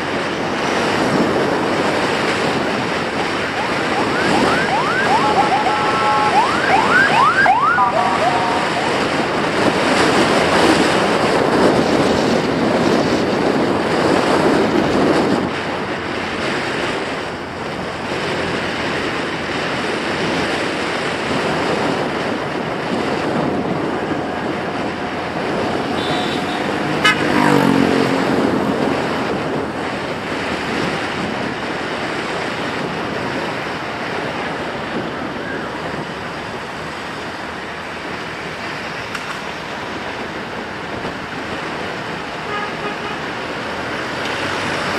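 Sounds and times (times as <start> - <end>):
road traffic noise: 0.0 - 44.9
wind rushing over microphone: 0.0 - 44.9
vehicle tone falling in pitch: 3.2 - 9.3.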